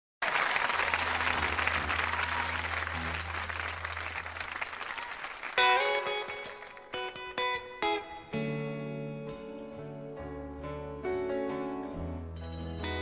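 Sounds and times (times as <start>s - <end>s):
audience applauding: 0.2s - 7.2s
guitar picking: 5.6s - 13.0s.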